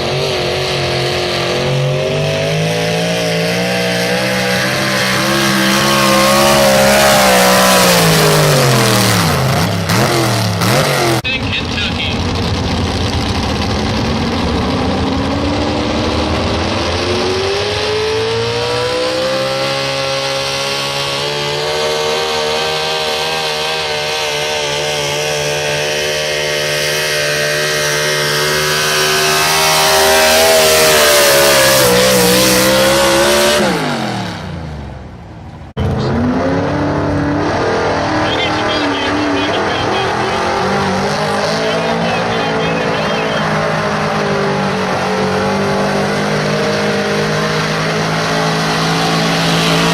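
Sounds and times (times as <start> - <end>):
truck engine at full throttle: 0.0 - 49.9
another engine running: 1.5 - 18.7, 34.6 - 49.9.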